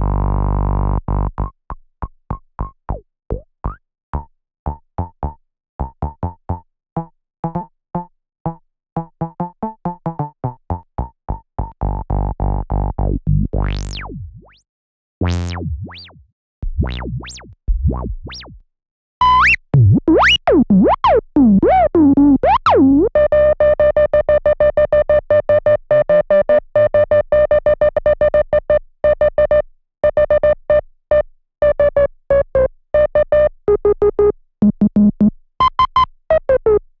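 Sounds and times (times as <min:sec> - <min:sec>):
synthesizer staccato notes: 0:13.3 - 0:14.6, 0:15.2 - 0:18.6, 0:19.2 - 0:23.1.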